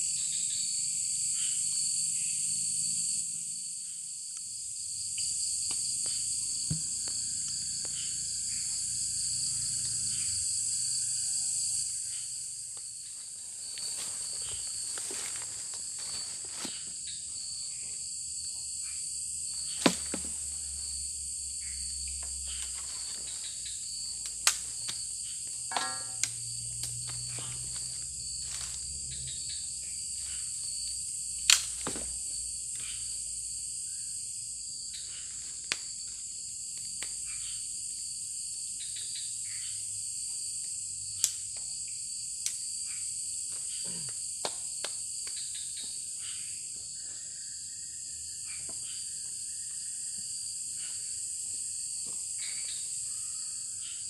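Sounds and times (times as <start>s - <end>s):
crickets and insects chirping: 0.0s - 54.0s.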